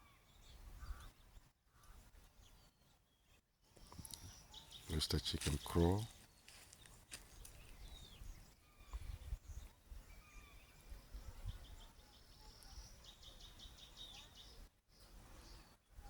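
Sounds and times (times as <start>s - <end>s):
thin bird calls: 3.7s - 16.0s.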